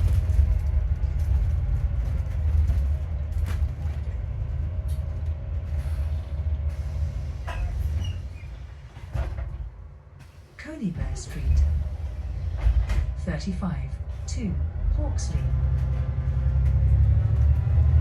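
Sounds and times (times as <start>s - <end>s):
bus engine rumble: 0.0s - 18.0s.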